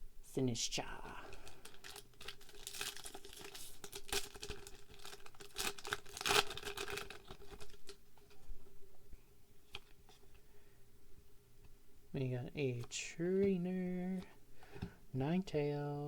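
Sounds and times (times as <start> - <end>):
foil wrapper tearing and crinkling: 1.6 - 8.3.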